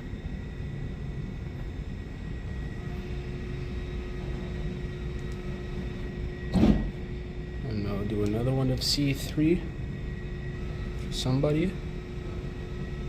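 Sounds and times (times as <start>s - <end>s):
vending machine motor humming: 0.0s - 13.0s
item dropping into bin thump: 6.5s - 6.9s.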